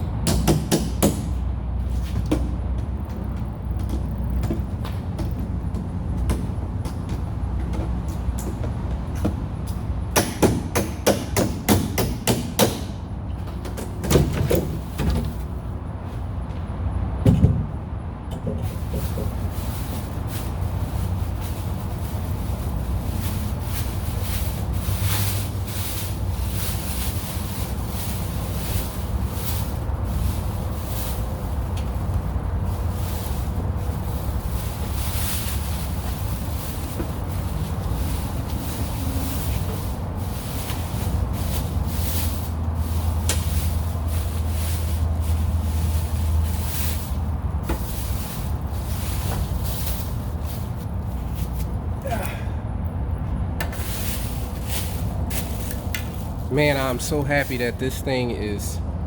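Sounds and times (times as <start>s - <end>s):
steady low rumble: 1.3s - 10.2s, 14.8s - 59.0s.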